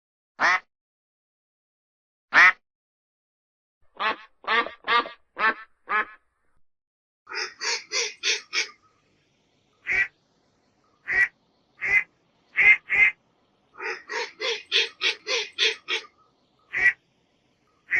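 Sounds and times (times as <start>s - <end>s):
duck quacking: 0.4s - 0.6s, 2.4s - 2.6s, 4.0s - 6.2s, 7.3s - 8.8s, 9.8s - 10.1s, 11.0s - 13.2s, 13.8s - 17.0s.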